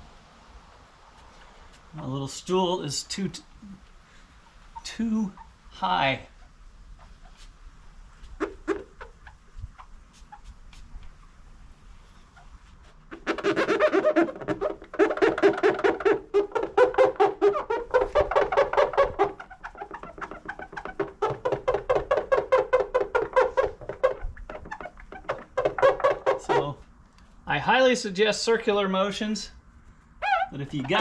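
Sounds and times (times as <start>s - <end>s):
buffing pad squeaking on paint: 8.2s - 11.3s, 12.1s - 26.8s, 30.2s - 31.0s.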